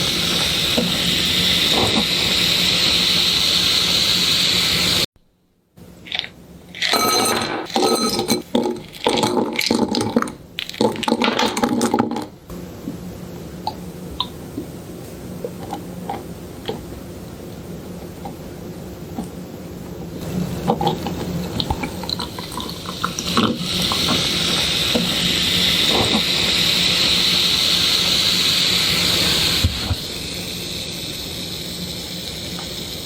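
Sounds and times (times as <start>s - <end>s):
ice clinking in glass: 6.8s - 8.4s.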